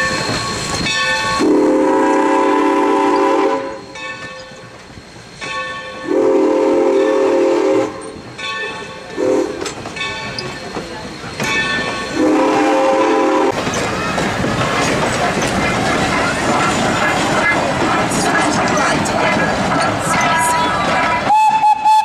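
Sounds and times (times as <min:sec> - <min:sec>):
locomotive horn blasts: 0:01.4 - 0:03.8, 0:06.0 - 0:08.1, 0:09.2 - 0:09.6, 0:12.2 - 0:13.6, 0:21.3 - 0:22.0.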